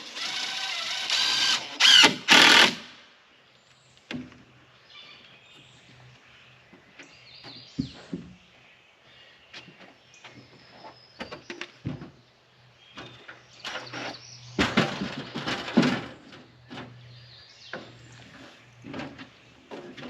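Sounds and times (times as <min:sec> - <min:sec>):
wooden boards knocking and scraping: 0:13.9 - 0:17.0.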